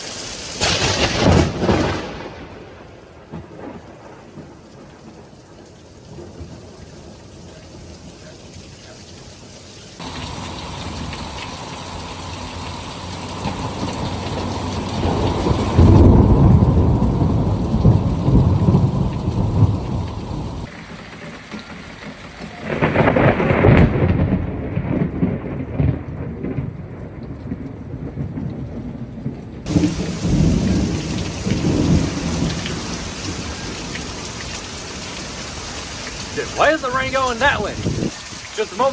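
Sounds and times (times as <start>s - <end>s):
heavy rain pouring: 0.0s - 2.5s, 3.3s - 24.2s, 29.7s - 38.9s
rolling thunder: 0.6s - 4.6s, 15.0s - 20.7s, 22.7s - 29.0s, 29.7s - 36.7s, 37.6s - 38.6s.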